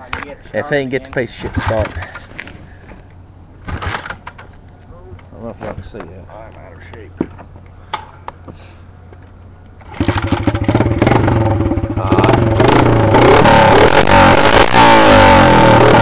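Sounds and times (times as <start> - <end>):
dirt bike engine revving: 9.8 - 16.0.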